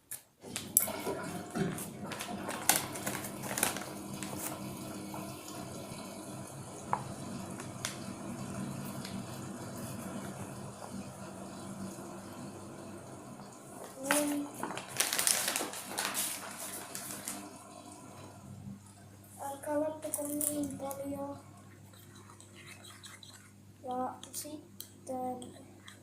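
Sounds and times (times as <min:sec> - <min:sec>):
water running from tap: 0:00.4 - 0:18.8.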